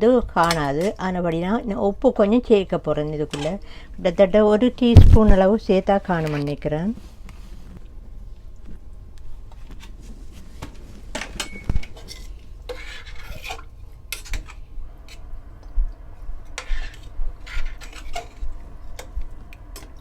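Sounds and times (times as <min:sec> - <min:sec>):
spoon scraping a cooking pot: 0:03.3 - 0:03.6, 0:11.5 - 0:15.2, 0:16.5 - 0:19.1.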